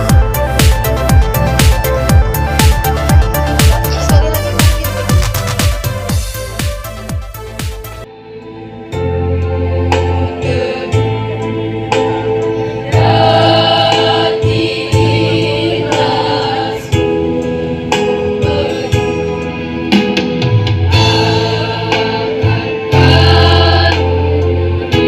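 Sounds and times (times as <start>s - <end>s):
instrumental accompaniment with bass: 0.0s - 25.0s
choir singing in parts: 10.0s - 19.4s, 20.9s - 25.0s.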